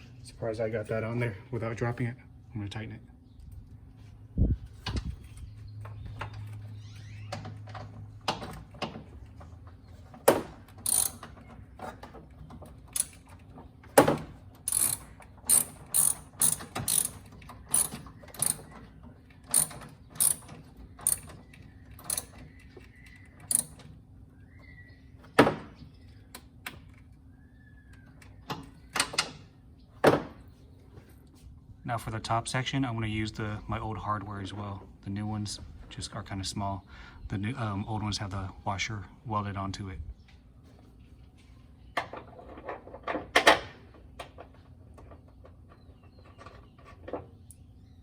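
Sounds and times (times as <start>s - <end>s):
ratchet clicking: 10.8s - 11.2s, 14.6s - 18.7s, 19.5s - 21.3s.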